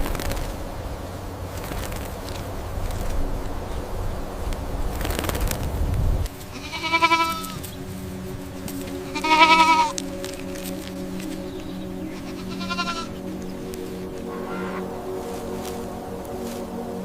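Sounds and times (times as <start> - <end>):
livestock bleating: 6.5 - 7.6, 9.1 - 10.0, 12.2 - 13.2, 14.3 - 14.9.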